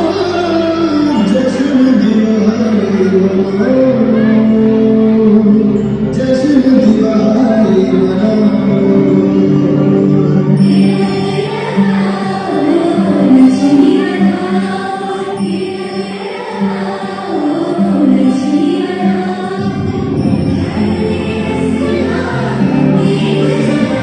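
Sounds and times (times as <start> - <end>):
song with singing voices: 0.0 - 24.0.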